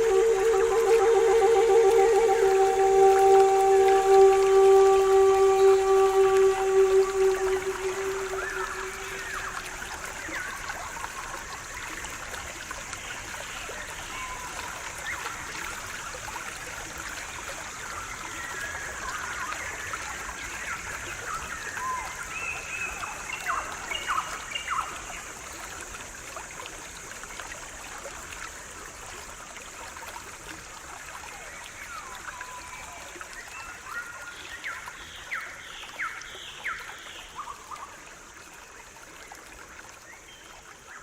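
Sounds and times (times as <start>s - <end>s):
held flute note: 0.0s - 10.3s
stream trickling: 0.0s - 41.0s.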